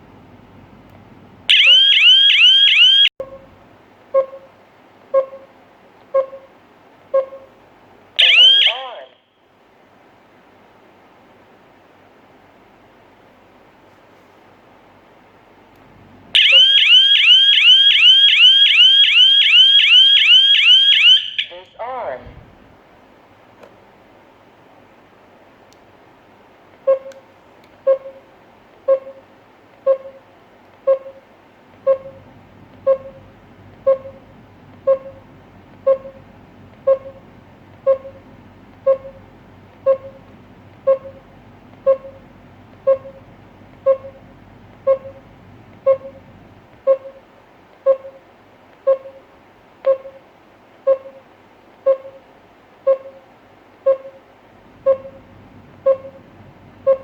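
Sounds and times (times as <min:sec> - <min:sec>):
alarm control panel beeping: 0:01.5 - 0:03.4, 0:08.2 - 0:09.0, 0:16.4 - 0:21.8, 0:26.9 - 0:27.2, 0:29.9 - 0:30.2, 0:31.8 - 0:32.2, 0:32.8 - 0:34.2, 0:34.8 - 0:35.2, 0:35.8 - 0:38.2, 0:38.8 - 0:46.3, 0:46.9 - 0:47.2, 0:47.9 - 0:48.2, 0:48.9 - 0:49.2, 0:49.8 - 0:50.2, 0:50.9 - 0:51.2, 0:51.9 - 0:52.2, 0:52.9 - 0:53.2, 0:53.9 - 0:54.2, 0:54.8 - 0:57.0.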